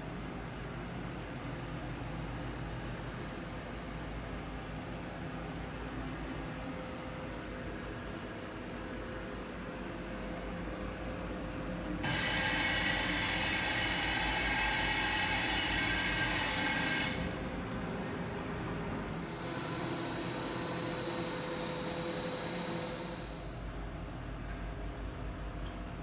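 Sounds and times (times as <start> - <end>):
loud steady hiss: 19.2 - 23.6.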